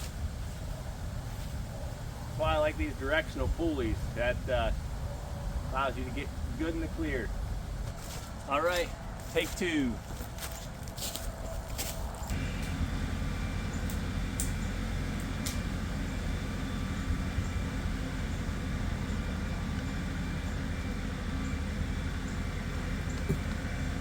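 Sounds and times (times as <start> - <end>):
tractor diesel engine under load: 0.0 - 24.0
sharp clicks: 13.8 - 14.6.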